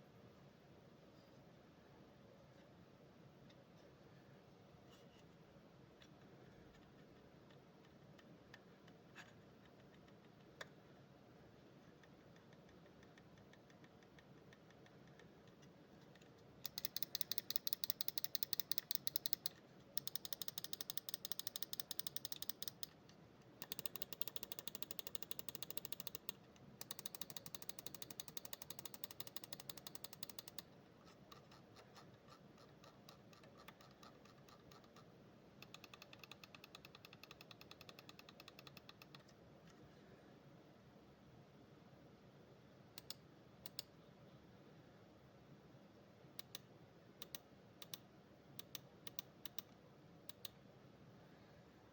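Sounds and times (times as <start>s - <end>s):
mouse buttons clicking rapidly: 6.7s - 10.8s, 11.9s - 39.4s, 42.9s - 43.9s, 46.4s - 50.6s.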